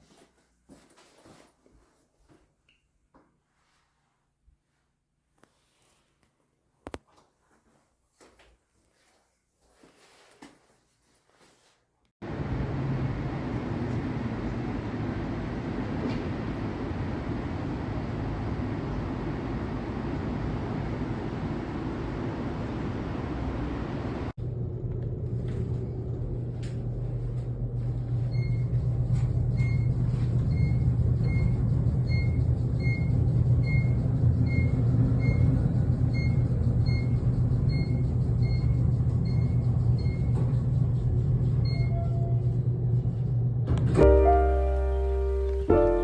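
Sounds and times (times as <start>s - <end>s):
low machine rumble: 12.2s - 46.0s.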